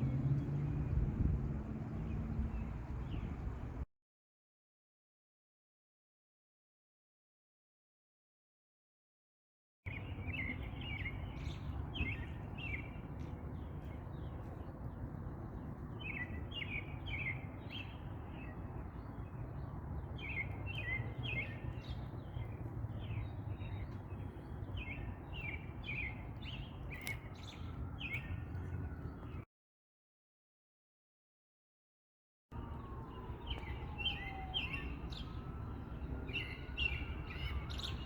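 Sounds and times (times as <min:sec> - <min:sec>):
low outdoor rumble: 0:00.0 - 0:03.8.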